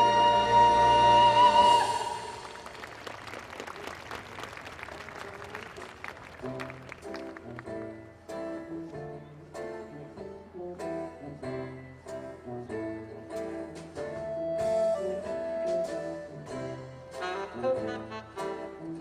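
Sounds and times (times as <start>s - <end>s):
audience applause: 2.2s - 7.8s.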